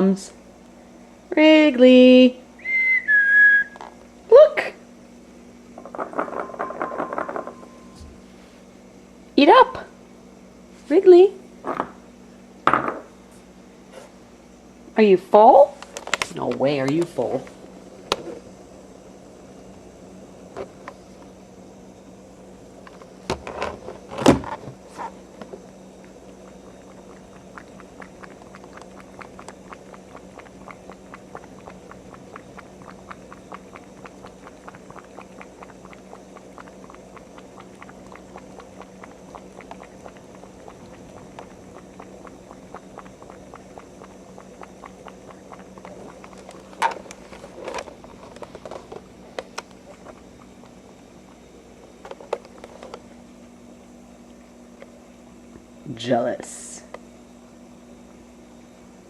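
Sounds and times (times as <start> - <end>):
low steady hum: 0.0 - 59.0
cat eating with mouth clicks: 25.4 - 53.1.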